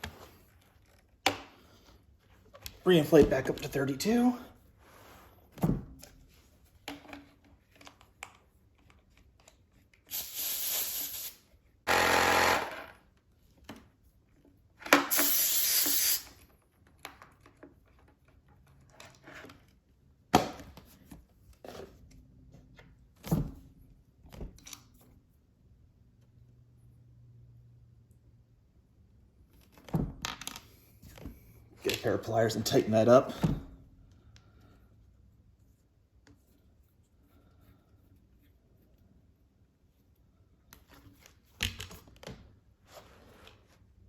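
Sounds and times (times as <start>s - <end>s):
air inflator pumping: 10.1s - 12.7s, 15.1s - 16.3s.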